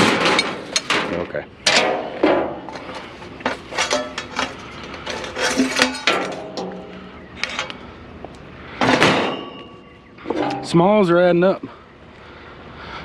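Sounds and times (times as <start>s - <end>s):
scrap metal clanking: 0.0s - 7.8s, 8.8s - 11.0s.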